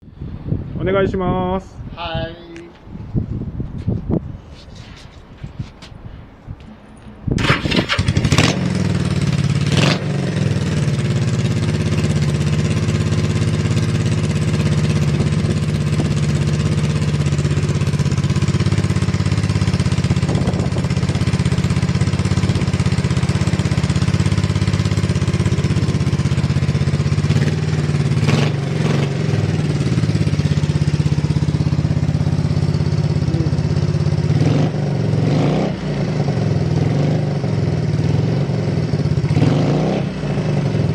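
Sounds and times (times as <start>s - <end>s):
motorcycle engine starting and idling: 6.7s - 40.9s.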